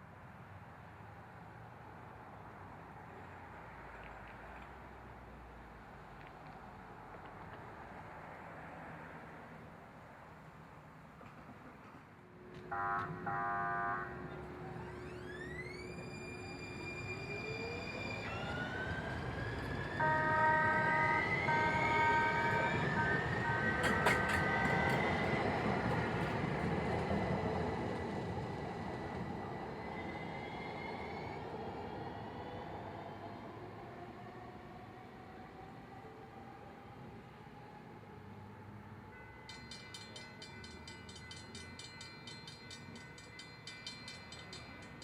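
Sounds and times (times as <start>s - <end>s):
train rumbling past: 11.0s - 45.0s
train chord horn blasts: 12.3s - 14.9s, 19.9s - 25.4s
train motor whine: 12.3s - 27.2s
railroad crossing bell clanging: 12.6s - 15.7s, 17.0s - 27.2s, 39.1s - 45.0s.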